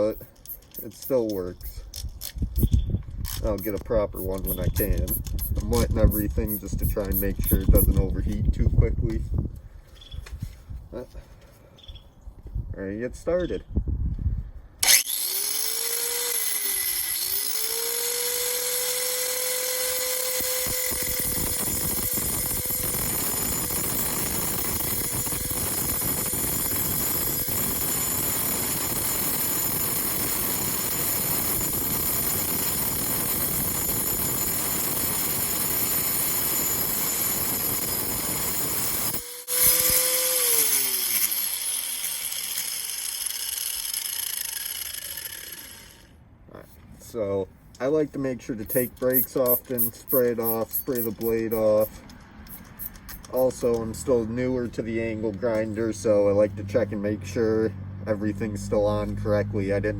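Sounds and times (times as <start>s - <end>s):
angle grinder cutting stone: 3.4s - 7.9s, 14.8s - 46.1s, 48.7s - 53.8s.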